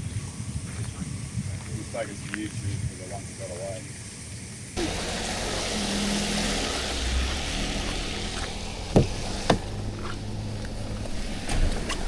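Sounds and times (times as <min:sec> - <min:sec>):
vehicle interior running noise: 0:04.8 - 0:12.0
short sharp knocks: 0:07.4 - 0:12.0.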